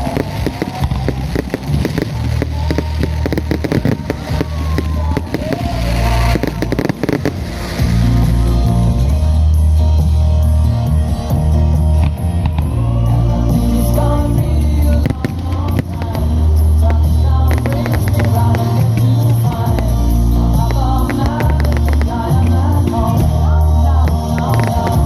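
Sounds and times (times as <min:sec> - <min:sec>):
fireworks crackling and banging: 0:00.0 - 0:09.1, 0:14.8 - 0:25.0
loud music with deep bass: 0:00.0 - 0:25.0.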